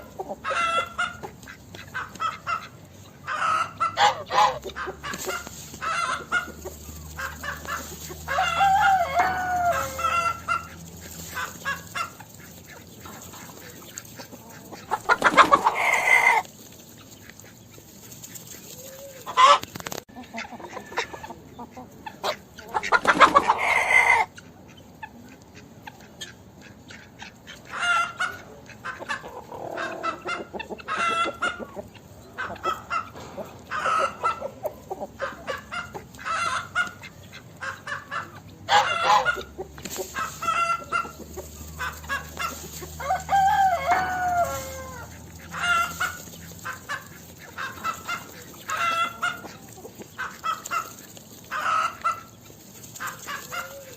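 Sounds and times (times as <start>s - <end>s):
chickens clucking: 0.0s - 53.9s
rooster crowing: 7.6s - 10.6s, 42.9s - 45.2s.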